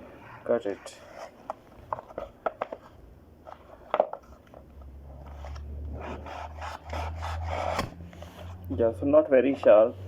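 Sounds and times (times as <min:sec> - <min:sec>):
knife scraping through cardboard: 0:06.0 - 0:08.5.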